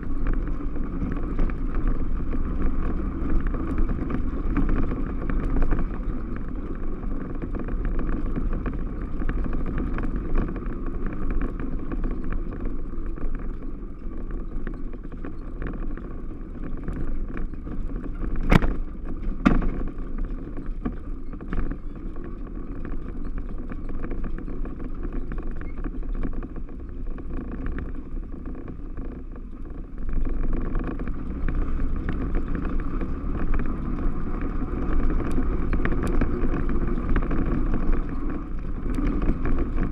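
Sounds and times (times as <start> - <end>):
single-cylinder engine running: 0.0 - 39.9
sharp knocks: 19.4 - 19.9.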